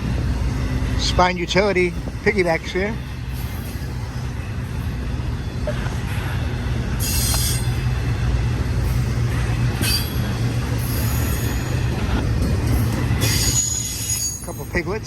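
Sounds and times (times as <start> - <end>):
freight train rumbling past: 0.0 - 15.0
wheels screeching on rails: 0.0 - 15.0.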